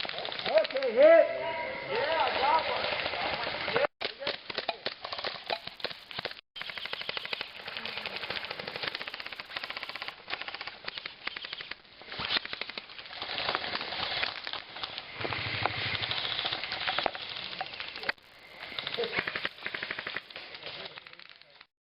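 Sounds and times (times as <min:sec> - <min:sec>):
airsoft guns firing bursts: 0:06.6 - 0:10.7.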